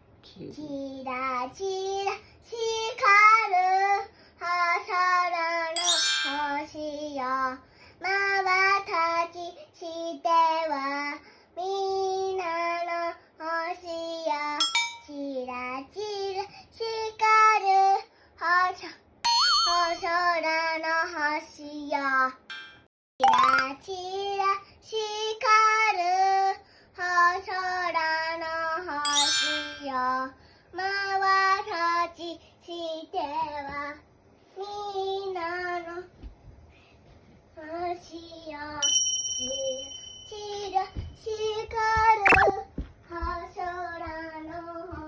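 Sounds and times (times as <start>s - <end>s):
girl singing: 27.1s - 31.7s, 39.6s - 45.0s.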